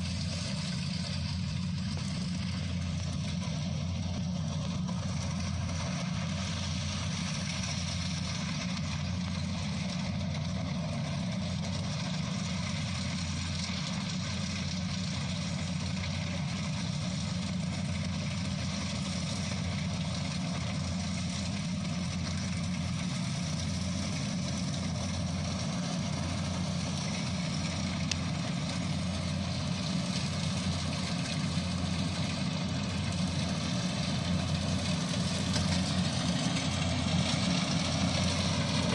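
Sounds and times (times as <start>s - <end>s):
combine harvester engine drone: 0.0s - 38.9s
machinery noise: 16.8s - 38.9s.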